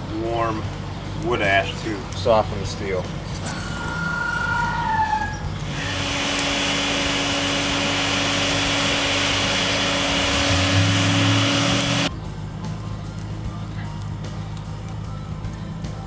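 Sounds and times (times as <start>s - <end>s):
forge humming: 3.2s - 12.1s
forge air rushing: 3.3s - 12.1s.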